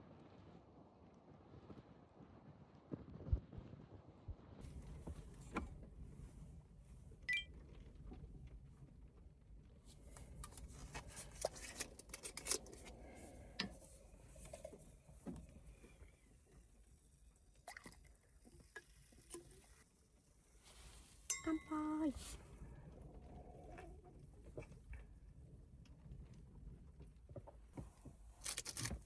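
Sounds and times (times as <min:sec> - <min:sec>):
short ringing clink: 0:21.3 - 0:22.0.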